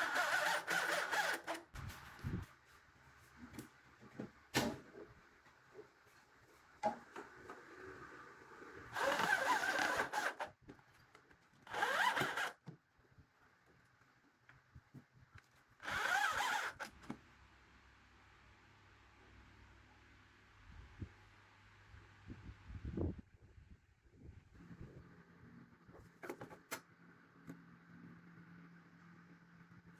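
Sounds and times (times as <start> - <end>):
power tool cutting wood: 0.0 - 1.6, 8.9 - 10.5, 11.7 - 12.6, 15.8 - 16.9.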